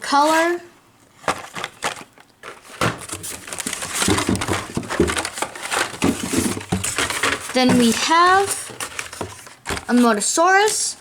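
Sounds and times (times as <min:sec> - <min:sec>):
plastic blister packs crinkling: 0:01.1 - 0:11.0
light clacks and knocks: 0:01.3 - 0:10.0.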